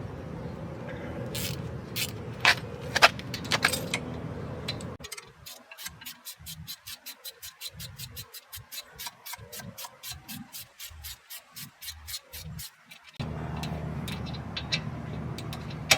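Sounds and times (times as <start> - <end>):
metal parts and tools clinking: 1.3 - 15.9.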